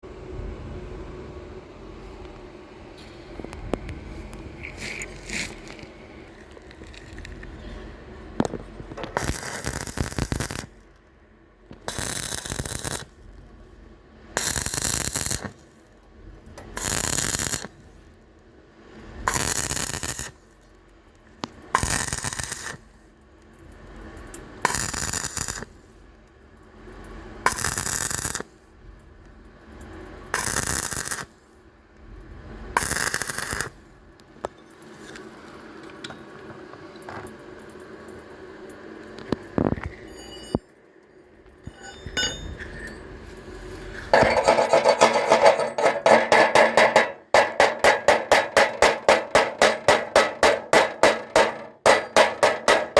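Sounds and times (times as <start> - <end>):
arc welding bursts: 9.1 - 10.8, 11.8 - 13.1, 14.4 - 15.7, 16.7 - 17.8, 19.3 - 20.4, 21.8 - 22.8, 24.7 - 25.7, 27.5 - 28.5, 30.4 - 31.4, 32.8 - 33.8.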